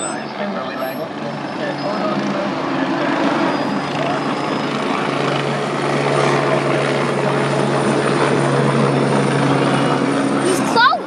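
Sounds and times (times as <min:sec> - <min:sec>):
helicopter rotor and engine: 0:00.0 - 0:11.0.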